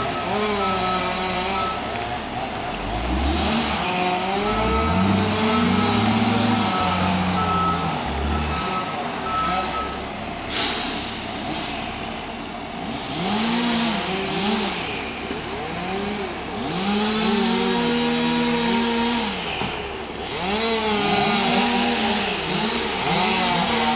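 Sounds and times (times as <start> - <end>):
truck reversing beeps: 0.0 - 12.3
truck engine running: 0.0 - 23.9
engine revving in blips: 2.7 - 10.0, 15.7 - 23.9
air brake hiss: 10.5 - 11.7.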